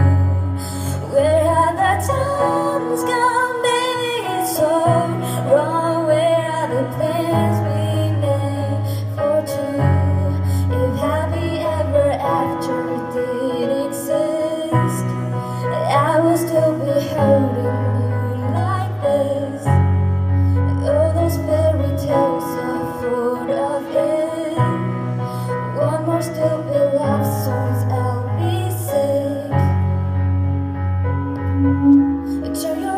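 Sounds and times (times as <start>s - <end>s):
woman singing: 0.0s - 20.0s, 20.6s - 30.0s, 31.6s - 32.9s
sustained piano chords: 0.0s - 32.9s.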